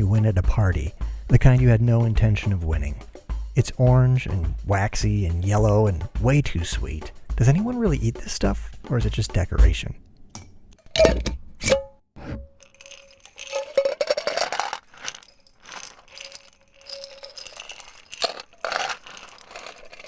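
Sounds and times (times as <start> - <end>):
hard candies clattering: 12.6 - 20.0.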